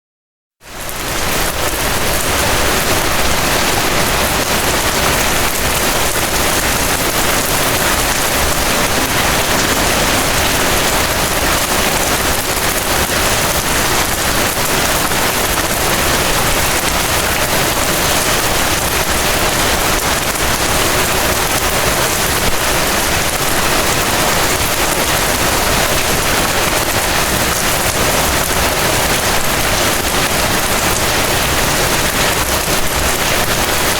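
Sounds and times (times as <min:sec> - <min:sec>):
steady rain falling: 0:00.6 - 0:33.9.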